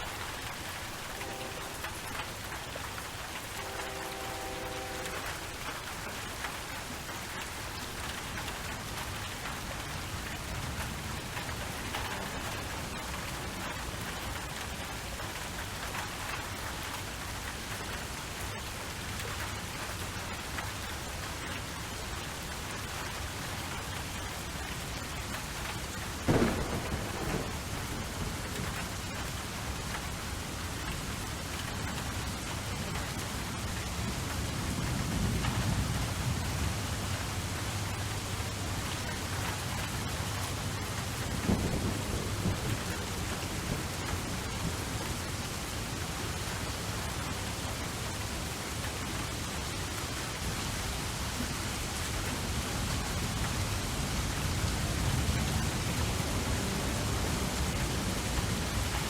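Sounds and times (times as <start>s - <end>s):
steady rainfall: 0.0s - 59.0s
low thunder rumble: 26.2s - 29.8s, 40.7s - 45.1s
sharp thunderclap: 26.3s - 28.8s, 41.3s - 43.8s.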